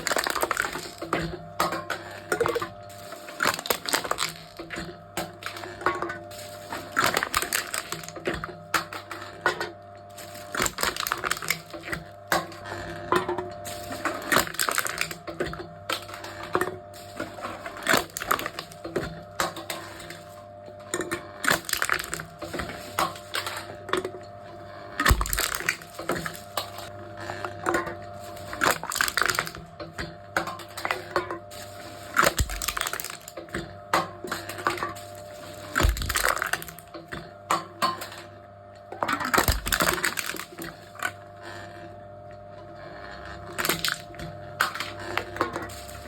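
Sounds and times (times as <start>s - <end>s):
machine crushing drink cans: 0.0s - 41.8s, 42.9s - 46.0s
steady low hum: 15.8s - 38.2s.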